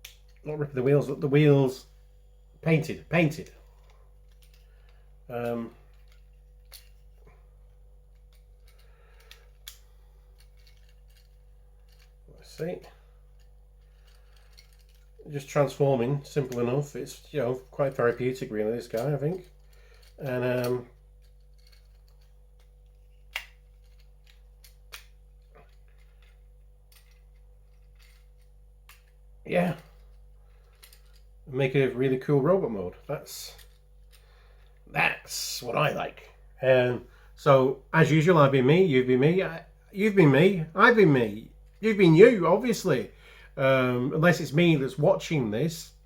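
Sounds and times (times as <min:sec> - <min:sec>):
plastic toy parts clicking: 0:23.3 - 0:28.2.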